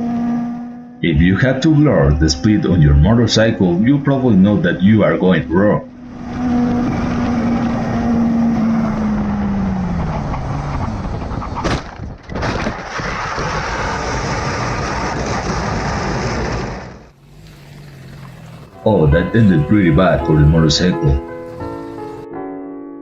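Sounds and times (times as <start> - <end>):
motorcycle engine slowing: 0.0 - 12.2, 13.7 - 22.2
sharp crash: 11.4 - 17.1.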